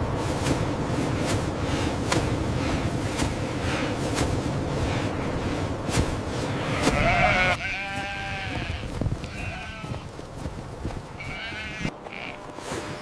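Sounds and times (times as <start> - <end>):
dense rushing noise: 0.0 - 7.6
sheep bleating: 6.6 - 10.1, 11.2 - 12.5.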